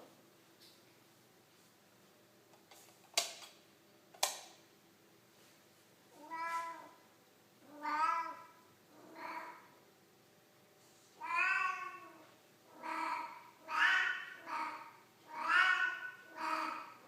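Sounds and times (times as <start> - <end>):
cat meowing: 6.2 - 7.0, 7.6 - 9.7, 11.2 - 17.0.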